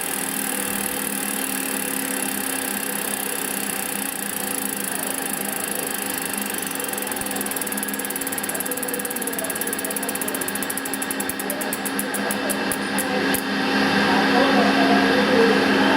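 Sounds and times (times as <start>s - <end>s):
bicycle freehub ratcheting: 0.0s - 13.4s.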